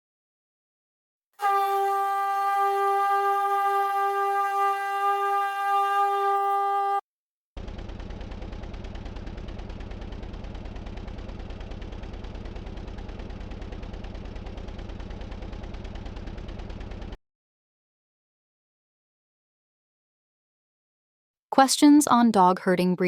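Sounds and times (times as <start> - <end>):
held horn-like tone: 1.4 - 7.0
rapid electronic pulses: 7.6 - 17.2.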